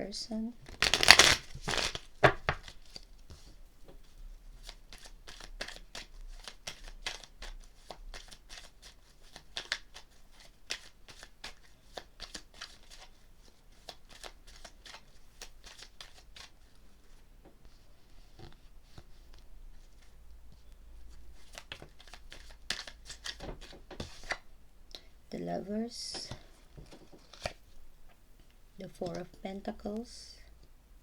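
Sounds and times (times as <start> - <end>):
cards being shuffled: 0.6 - 3.6, 4.6 - 17.2, 21.3 - 24.5, 26.1 - 27.6.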